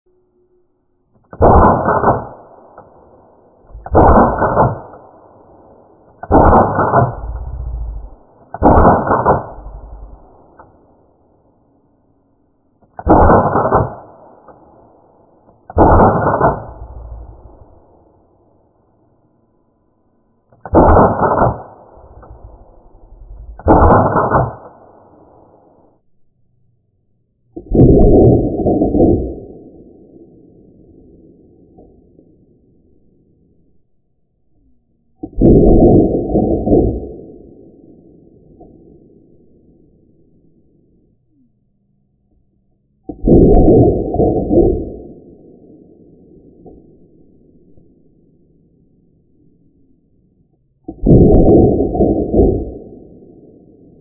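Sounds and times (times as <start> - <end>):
slowed airsoft pistol shots: 1.1 - 11.4, 12.8 - 18.3, 20.5 - 25.9, 35.2 - 40.6, 43.1 - 48.2, 50.9 - 54.0.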